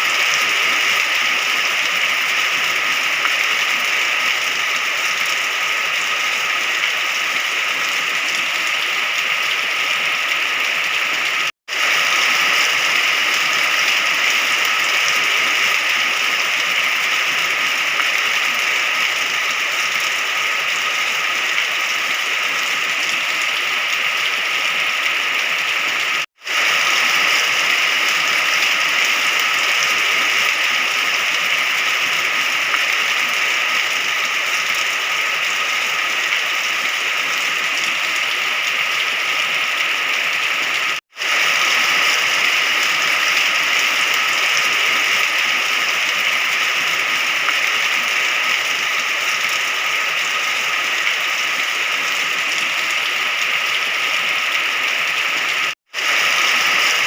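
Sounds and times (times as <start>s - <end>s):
steady rain falling: 0.0s - 57.0s.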